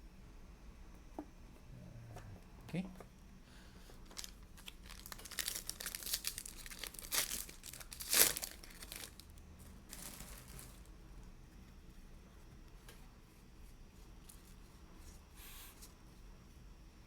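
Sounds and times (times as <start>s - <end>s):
plastic wrapper crinkling: 4.0s - 10.9s.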